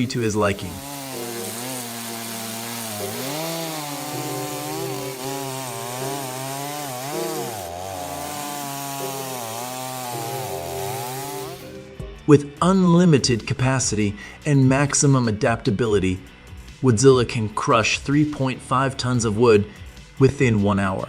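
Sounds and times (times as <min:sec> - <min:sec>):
chainsaw cutting wood: 0:00.0 - 0:11.8.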